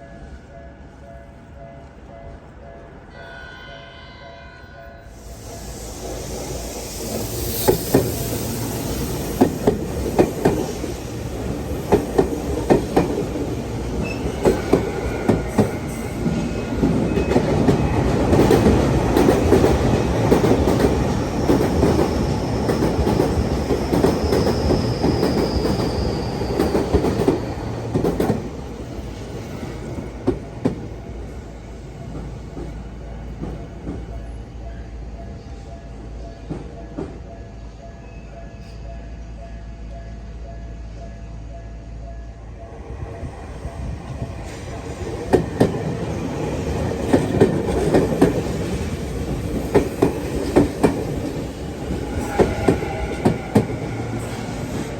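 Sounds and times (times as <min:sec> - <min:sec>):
train running rumble: 0:05.2 - 0:37.8, 0:41.4 - 0:54.9
train wheels clacking over rail joints: 0:09.3 - 0:28.5, 0:44.4 - 0:54.9
high wheel squeal: 0:24.2 - 0:27.8.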